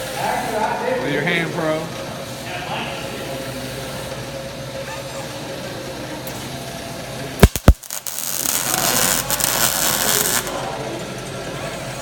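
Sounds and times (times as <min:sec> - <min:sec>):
sharp loud clicks: 0:07.4 - 0:10.6
welder humming: 0:07.4 - 0:10.7
welding arc hissing: 0:07.4 - 0:10.7.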